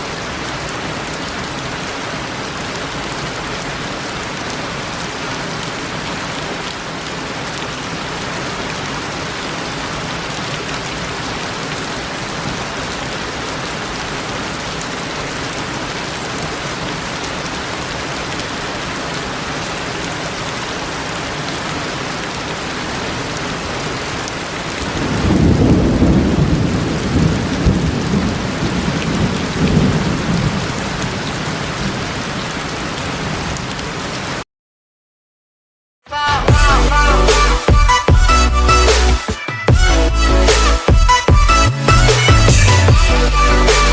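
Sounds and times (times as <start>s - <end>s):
steady rain: 0.0s - 34.4s, 36.6s - 43.9s
thunder rumbling: 24.8s - 32.1s.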